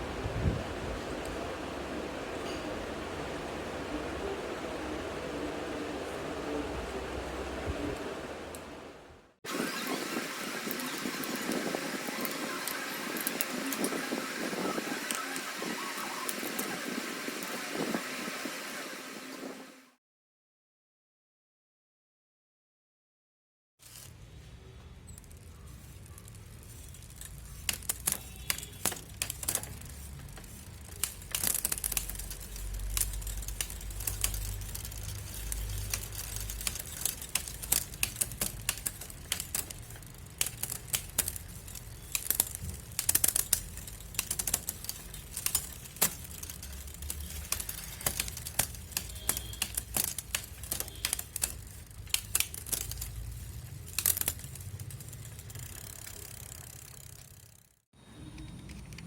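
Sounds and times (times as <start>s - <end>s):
bicycle clicks and rattles: 10.4s - 18.8s, 23.8s - 59.0s.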